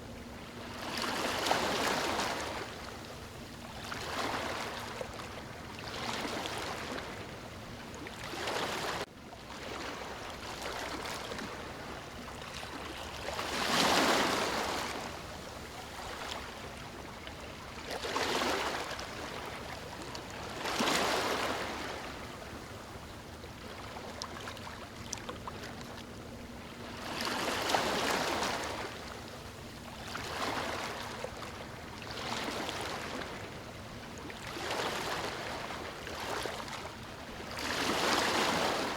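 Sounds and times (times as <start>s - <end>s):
ocean waves breaking: 8.2s - 22.5s, 26.6s - 38.9s.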